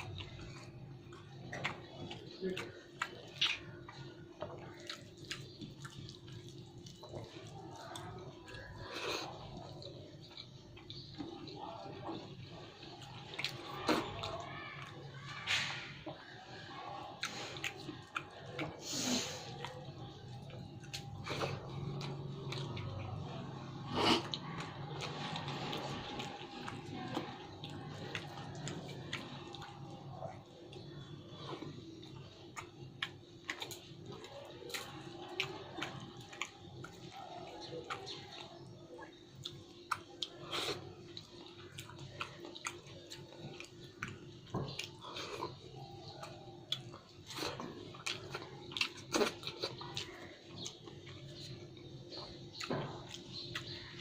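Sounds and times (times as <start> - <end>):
mouth clicks and smacks: 0.0 - 11.5
person chewing food: 0.0 - 54.0.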